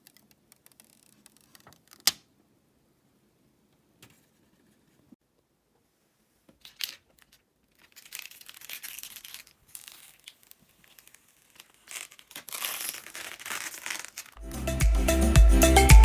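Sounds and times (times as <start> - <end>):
packaging crinkling and rustling: 6.6 - 14.4.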